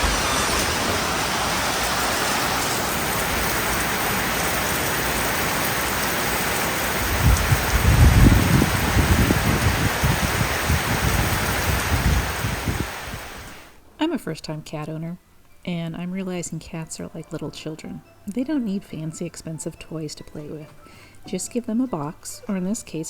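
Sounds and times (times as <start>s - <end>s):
thunder rumbling: 0.0s - 13.7s
heavy rain falling: 0.0s - 13.8s.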